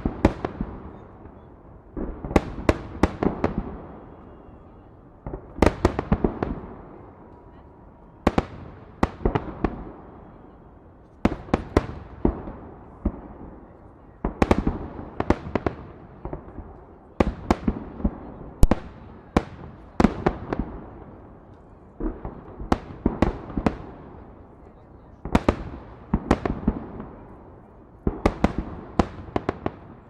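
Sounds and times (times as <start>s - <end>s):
fireworks bangs echoing: 0.0s - 4.6s, 5.2s - 7.3s, 8.2s - 10.2s, 11.2s - 13.6s, 14.2s - 30.0s.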